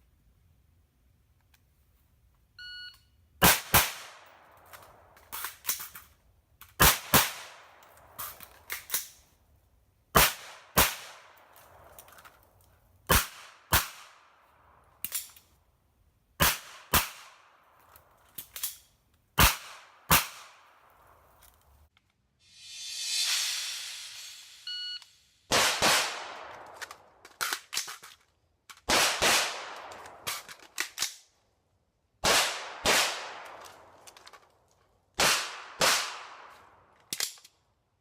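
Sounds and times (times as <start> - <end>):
shot timer beep: 2.6 - 3.2, 24.6 - 25.2
gunshots: 3.4 - 4.3, 6.8 - 7.7, 10.2 - 11.4, 19.4 - 20.7, 25.5 - 27.0, 32.2 - 33.7
magazine reload clicks: 29.8 - 31.3.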